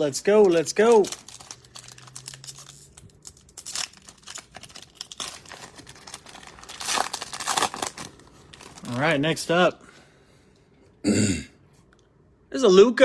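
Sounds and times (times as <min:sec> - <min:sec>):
wrapper tearing and crinkling: 0:00.0 - 0:09.5.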